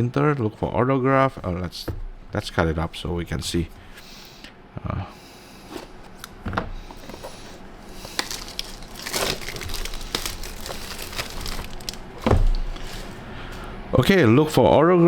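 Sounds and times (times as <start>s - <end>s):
dull thump: 1.8s - 2.2s, 12.2s - 13.0s
plastic wrapping crinkling: 6.9s - 13.6s.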